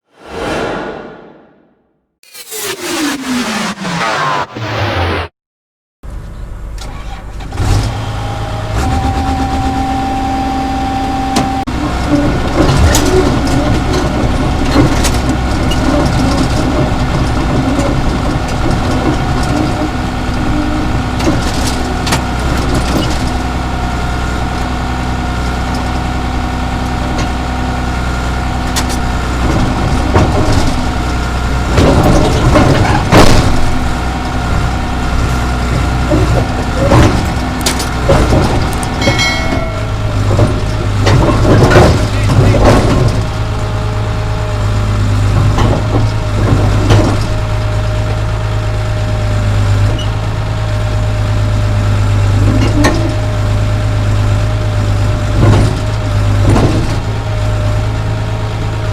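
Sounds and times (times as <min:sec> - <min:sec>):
bulldozer diesel engine running: 0:06.1 - 0:58.9
knocks and rattles: 0:35.7 - 0:43.4
steady high tone: 0:39.0 - 0:40.4.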